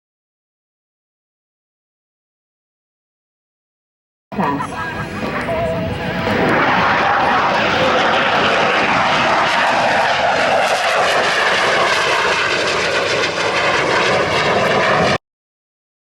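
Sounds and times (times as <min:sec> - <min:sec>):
jet flying past: 0:04.4 - 0:15.2.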